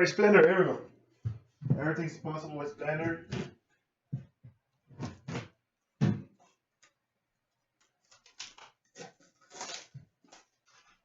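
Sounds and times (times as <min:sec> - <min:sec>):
cardboard and wrapper rustling: 0:07.8 - 0:11.0.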